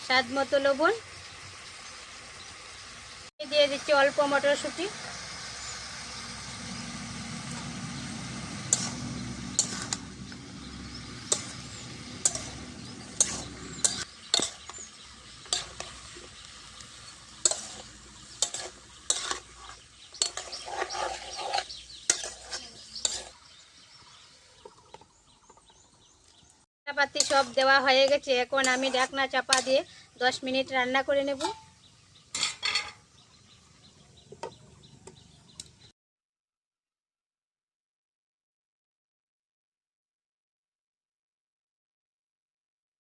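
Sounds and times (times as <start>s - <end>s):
vegetables sizzling in oil: 0.0s - 25.6s, 26.9s - 35.8s
spatula clinking and scraping pan: 8.6s - 23.4s, 27.0s - 30.5s, 31.3s - 33.1s.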